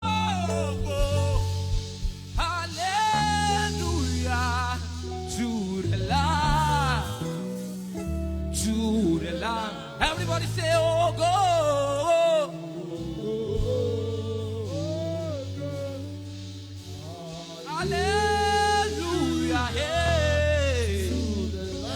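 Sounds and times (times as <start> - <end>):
keyboard and bass chords: 0.0 - 12.2
person singing with vibrato: 0.0 - 21.9.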